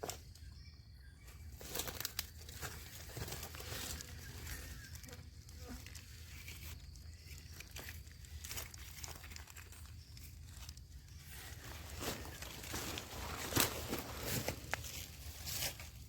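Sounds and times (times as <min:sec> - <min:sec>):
rustling and crinkling: 0:01.2 - 0:16.0
small crackles: 0:01.6 - 0:16.0.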